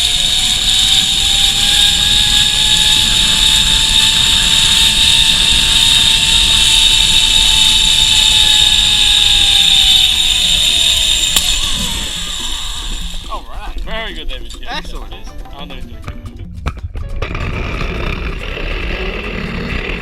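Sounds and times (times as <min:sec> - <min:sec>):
wind rush on microphone: 0:00.0 - 0:13.2
zip-line pulleys whining on cable: 0:00.0 - 0:13.6, 0:17.2 - 0:20.0.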